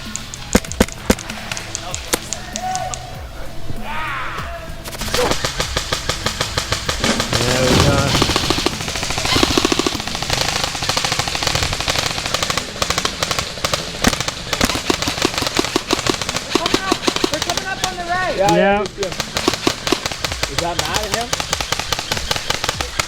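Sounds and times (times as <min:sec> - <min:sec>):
airsoft guns firing automatic: 0:04.9 - 0:23.0.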